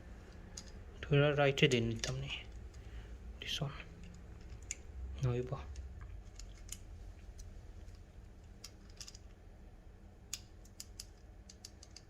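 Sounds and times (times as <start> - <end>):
light clicks of bike parts: 0.3 - 0.8, 3.8 - 9.4, 10.3 - 12.0.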